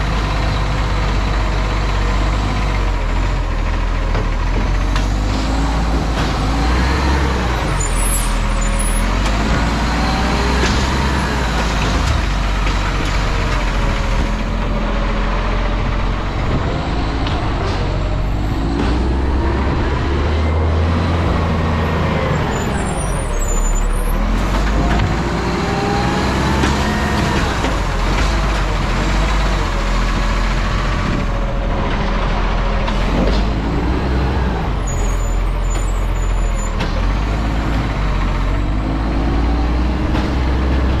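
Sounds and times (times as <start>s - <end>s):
garbage truck diesel engine: 0.0s - 41.0s.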